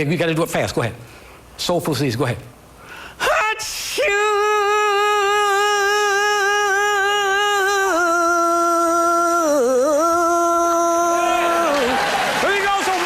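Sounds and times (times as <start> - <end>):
person singing long soulful note: 4.0 - 11.6.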